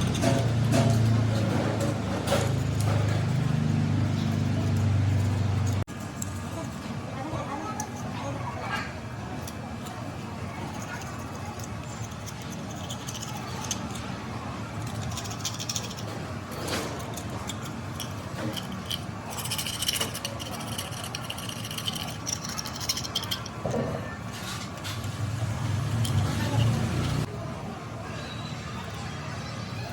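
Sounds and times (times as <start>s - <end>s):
ringing metallic rattles: 0.0s - 6.3s, 14.7s - 25.0s
metal parts clinking and scraping: 0.0s - 6.8s, 10.6s - 27.3s
steady background noise: 0.0s - 29.9s.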